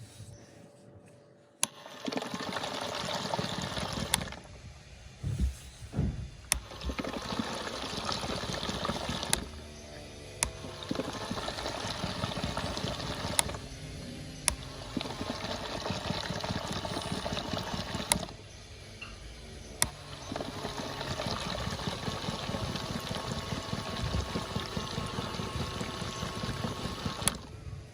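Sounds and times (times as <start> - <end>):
toy washing machine sloshing: 1.7 - 4.5, 6.6 - 9.6, 10.4 - 13.6, 14.5 - 18.4, 19.8 - 27.5.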